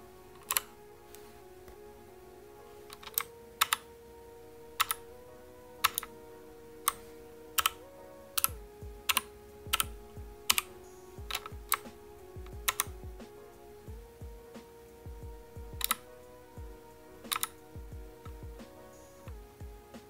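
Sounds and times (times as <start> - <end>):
background music with held notes: 0.0 - 20.0
mechanical keyboard key clicks: 17.3 - 17.6.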